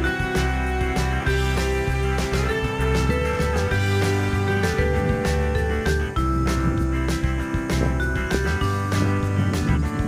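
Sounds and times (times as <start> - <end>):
beat: 0.0 - 10.0
guitar: 0.0 - 10.0
sustained bass notes: 0.0 - 10.0.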